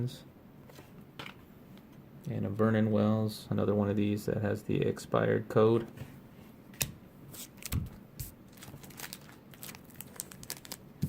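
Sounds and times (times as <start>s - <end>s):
cards and wrappers rustling: 7.3s - 11.0s.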